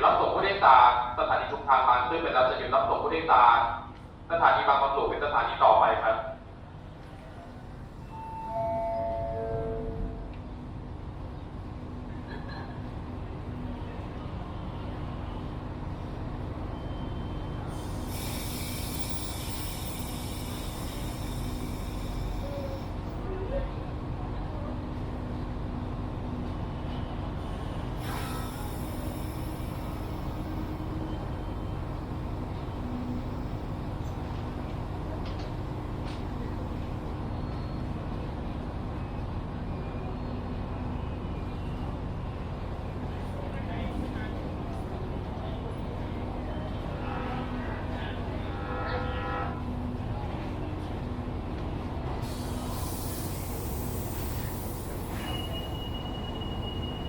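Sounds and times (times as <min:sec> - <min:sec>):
diesel engine rumbling: 0:06.8 - 0:46.9
faint high tones: 0:08.0 - 0:10.3.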